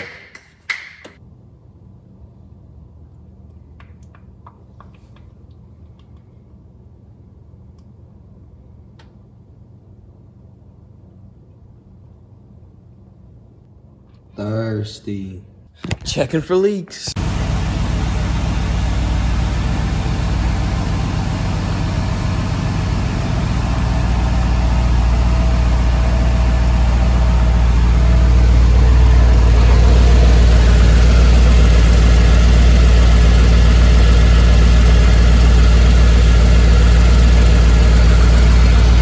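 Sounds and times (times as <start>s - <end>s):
car engine idling: 17.2s - 39.0s.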